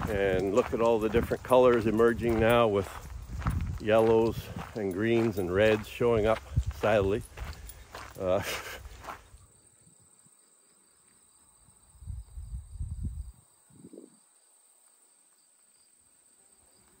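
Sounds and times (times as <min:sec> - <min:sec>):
wind buffeting microphone: 0:00.0 - 0:08.0, 0:11.9 - 0:14.2
crickets trilling: 0:00.0 - 0:17.0.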